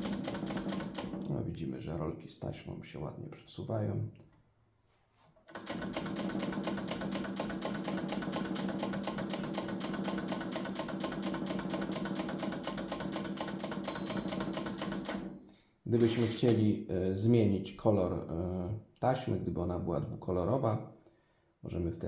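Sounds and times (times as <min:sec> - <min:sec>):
manual typewriter typing: 0:00.0 - 0:01.3, 0:05.5 - 0:15.3, 0:16.0 - 0:16.6.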